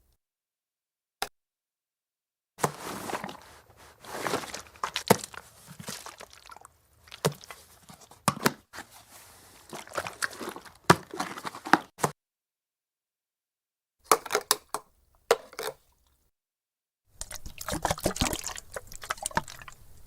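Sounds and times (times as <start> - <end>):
water sloshing in canteen: 2.6 - 11.9, 17.2 - 20.0.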